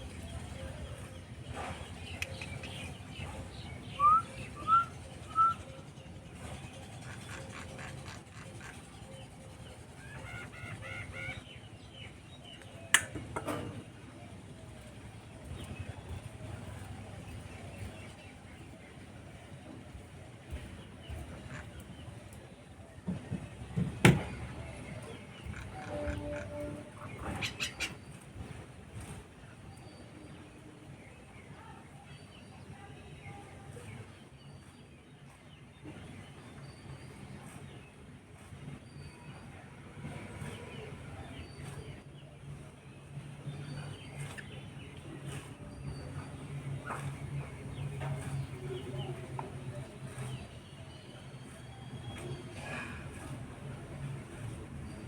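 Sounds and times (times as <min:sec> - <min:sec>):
birds calling: 0:00.0 - 0:22.5, 0:23.1 - 0:28.6, 0:43.1 - 0:55.0
sharp knocks: 0:23.8 - 0:24.4.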